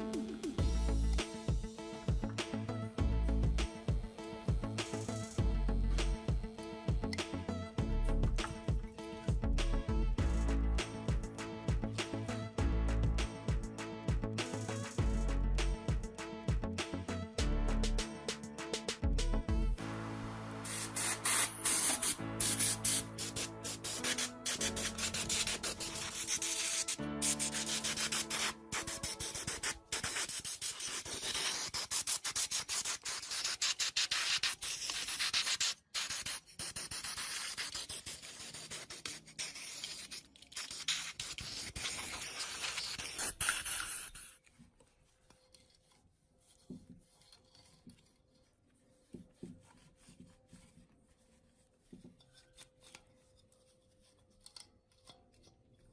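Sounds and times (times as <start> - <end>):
music: 0.0 - 31.6
small handling sounds: 39.2 - 55.9.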